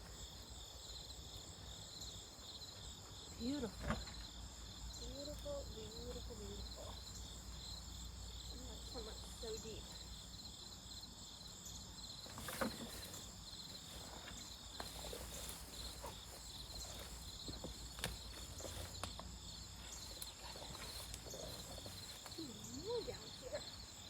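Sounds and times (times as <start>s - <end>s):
insects chirring: 0.0s - 24.0s
sharp knocks and scrapes: 12.2s - 19.3s
soil being dug by hand: 12.2s - 22.5s.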